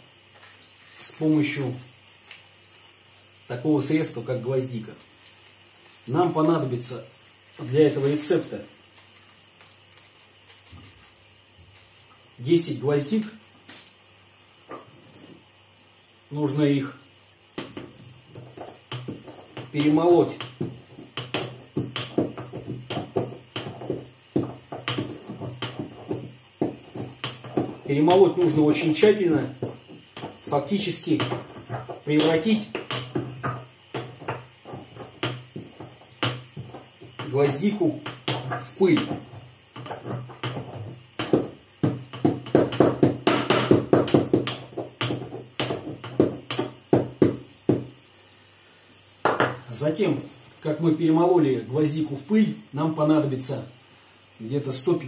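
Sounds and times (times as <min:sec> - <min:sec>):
cloves pounded by hand: 0:17.6 - 0:48.0.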